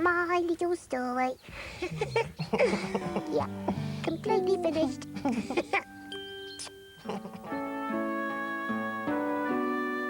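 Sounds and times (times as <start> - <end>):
bell-like chime: 6.0 - 7.1.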